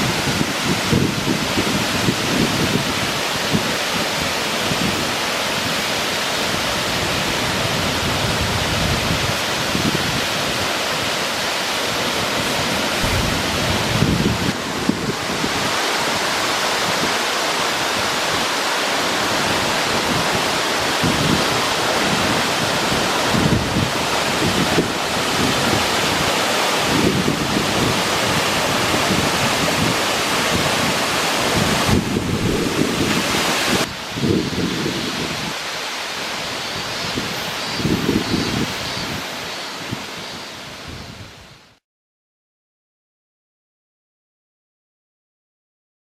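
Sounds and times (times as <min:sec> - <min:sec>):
waterfall rushing: 0:00.0 - 0:41.8
low rumbles: 0:12.9 - 0:15.5.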